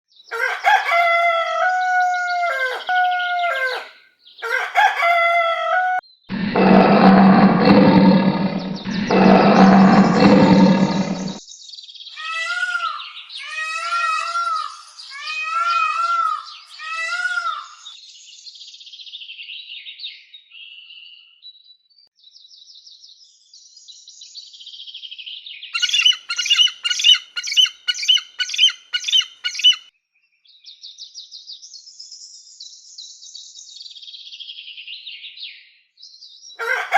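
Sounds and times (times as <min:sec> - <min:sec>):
bird chirps: 0:00.2 - 0:06.3, 0:08.4 - 0:18.6, 0:25.8 - 0:29.9
long harsh calls: 0:00.3 - 0:11.4, 0:36.6 - 0:36.9
pitched animal calls: 0:00.3 - 0:11.4.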